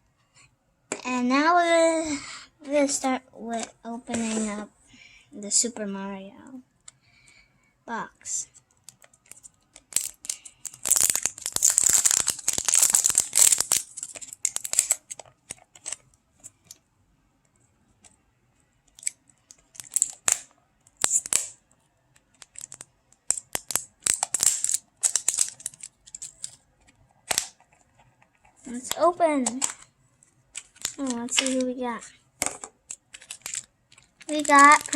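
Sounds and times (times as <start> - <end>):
packaging crinkling and rustling: 8.6 - 16.0, 18.9 - 21.6, 22.3 - 29.9, 30.5 - 31.7, 32.5 - 34.9
packaging tearing: 9.2 - 15.2, 19.8 - 20.4, 21.0 - 21.6, 22.4 - 26.5, 30.6 - 31.6, 32.9 - 34.9.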